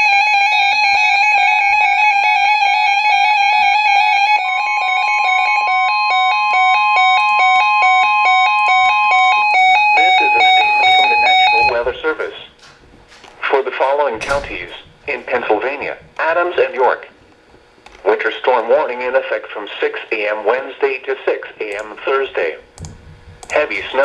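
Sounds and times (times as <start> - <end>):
electronic alarm beeping: 0.0 - 12.5
steady pure alarm tone: 0.0 - 24.0.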